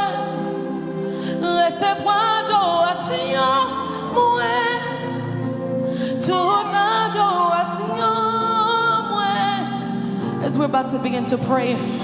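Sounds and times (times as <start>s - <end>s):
gospel singing with instruments: 0.0s - 12.0s.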